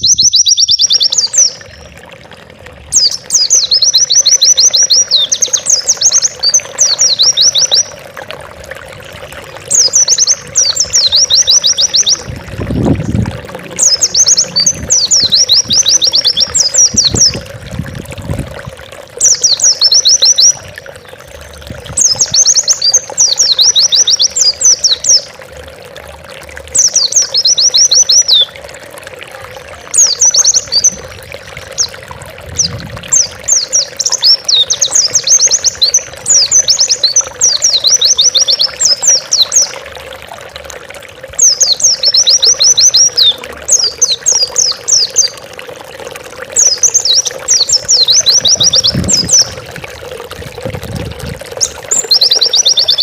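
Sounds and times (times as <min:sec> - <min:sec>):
small bird singing: 0:00.0 - 0:01.7, 0:02.9 - 0:08.0, 0:09.7 - 0:12.3, 0:13.7 - 0:17.4, 0:19.2 - 0:20.6, 0:22.0 - 0:25.3, 0:26.8 - 0:28.5, 0:32.6 - 0:39.8, 0:41.4 - 0:45.4, 0:46.6 - 0:49.6, 0:51.6 - 0:53.0.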